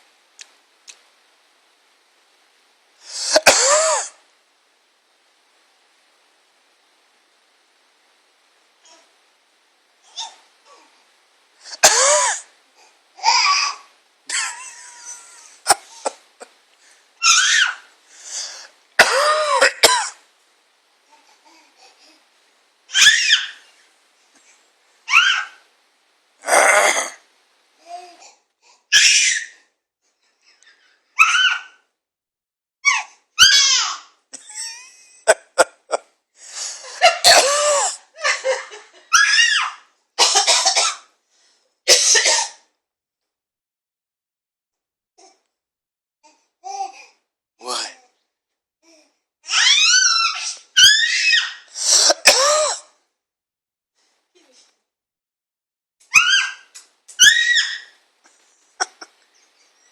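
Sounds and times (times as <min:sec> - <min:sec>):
person coughing: 0:03.2 - 0:04.2, 0:11.7 - 0:12.4, 0:15.7 - 0:16.2, 0:19.0 - 0:20.2, 0:35.3 - 0:36.0, 0:37.0 - 0:38.0, 0:51.8 - 0:52.9.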